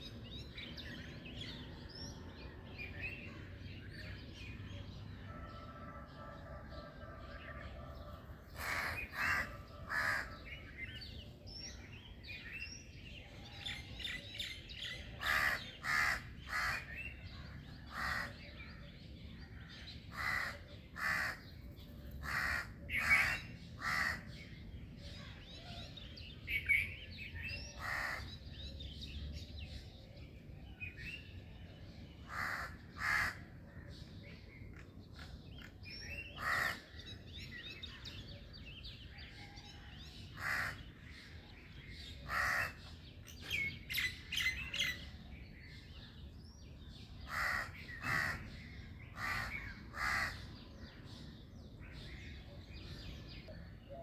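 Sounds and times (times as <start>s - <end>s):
loud rough bird calls: 5.3s - 11.0s, 14.9s - 18.6s, 20.0s - 24.6s, 27.5s - 28.5s, 32.2s - 33.9s, 34.7s - 38.0s, 39.4s - 41.3s, 42.0s - 45.1s, 47.2s - 50.9s.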